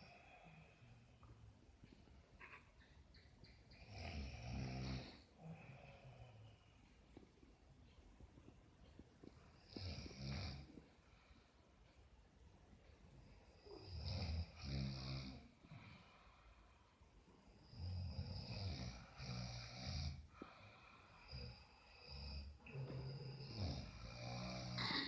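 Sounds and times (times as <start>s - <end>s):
people snoring: 3.8s - 6.8s, 9.5s - 10.9s, 13.4s - 16.6s, 17.4s - 25.0s.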